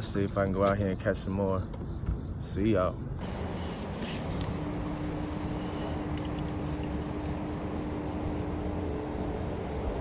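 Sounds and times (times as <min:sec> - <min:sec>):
faint steady hum: 0:00.0 - 0:10.0
insects chirring: 0:00.0 - 0:10.0.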